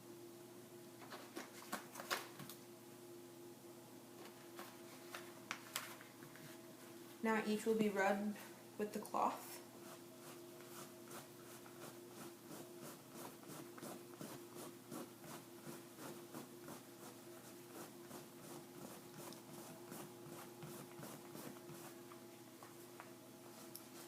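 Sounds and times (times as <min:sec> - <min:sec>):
cloth scratchy rubbing: 0:09.8 - 0:22.0.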